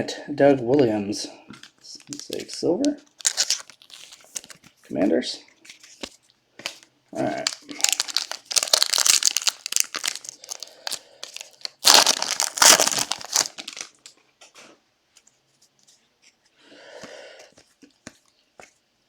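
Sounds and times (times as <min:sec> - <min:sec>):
foil wrapper tearing and crinkling: 0:02.0 - 0:04.6, 0:06.7 - 0:14.1.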